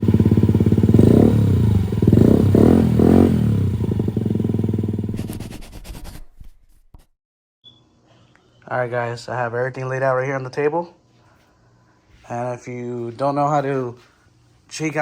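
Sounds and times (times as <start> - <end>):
scooter engine revving: 0.0 - 5.2.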